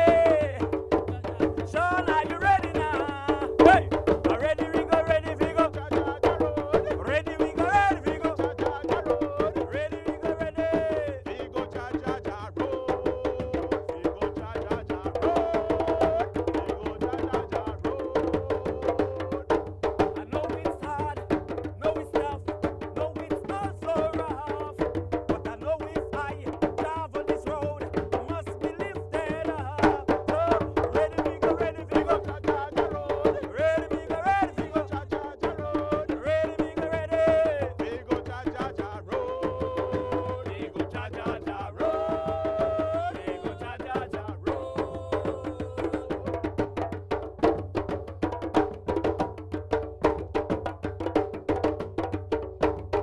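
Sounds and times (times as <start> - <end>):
voices singing: 0.0 - 19.4, 28.2 - 46.4
hand drums and wood-block strikes: 0.0 - 53.0.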